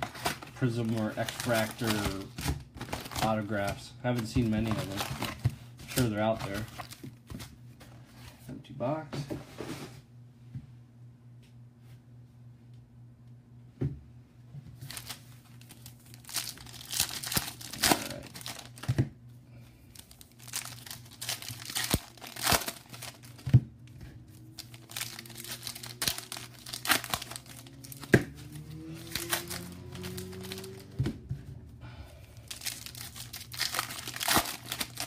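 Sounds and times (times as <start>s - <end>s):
foil wrappers crinkling: 0.0s - 7.5s, 14.8s - 19.0s, 19.6s - 23.6s, 24.3s - 30.9s, 32.4s - 35.0s.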